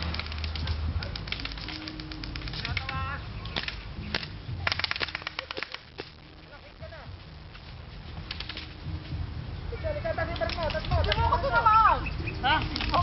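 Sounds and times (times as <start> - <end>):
airsoft guns firing: 0.0 - 6.1.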